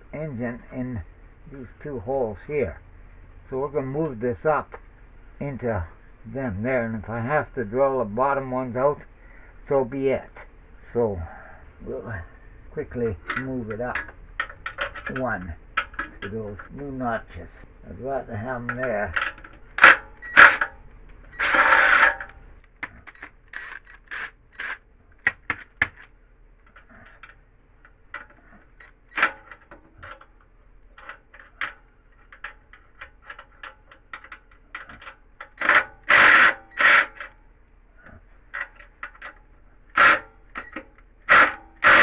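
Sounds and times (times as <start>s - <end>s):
tools clinking on metal frame: 13.0s - 16.8s.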